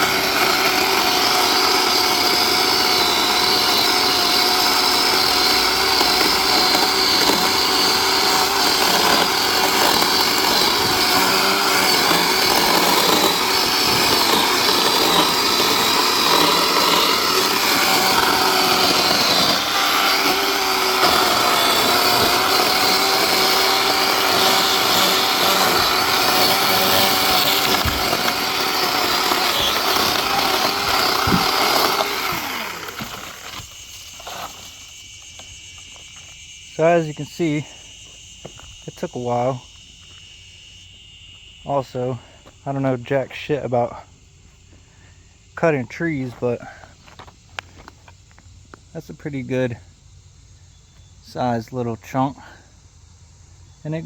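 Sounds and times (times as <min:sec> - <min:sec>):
battery chainsaw cutting wood: 0:00.0 - 0:39.6.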